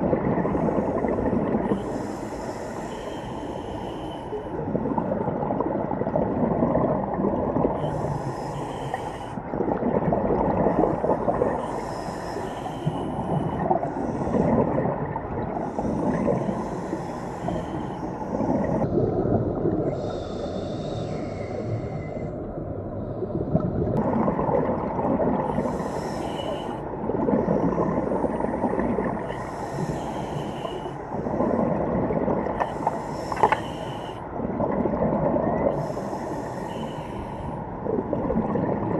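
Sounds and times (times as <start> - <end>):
hissing regulator inhalations: 0.5 - 4.6, 7.8 - 9.4, 11.6 - 14.8, 15.5 - 18.9, 19.9 - 22.4, 25.4 - 26.9, 27.5 - 31.3, 32.5 - 34.3, 35.7 - 37.6
bubbling exhalations underwater: 4.6 - 7.8, 9.5 - 11.6, 23.2 - 25.7, 34.4 - 35.9, 37.8 - 38.9.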